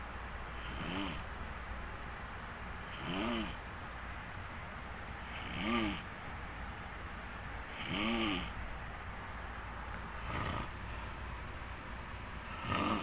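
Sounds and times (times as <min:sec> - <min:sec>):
person snoring: 0:00.6 - 0:01.2, 0:02.9 - 0:03.6, 0:05.3 - 0:06.1, 0:07.7 - 0:08.6, 0:10.2 - 0:11.0, 0:12.5 - 0:13.0.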